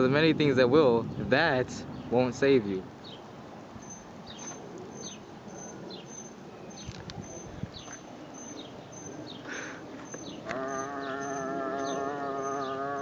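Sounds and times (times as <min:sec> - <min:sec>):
outdoor background noise: 0:00.0 - 0:13.0
small bird chirping: 0:03.0 - 0:13.0.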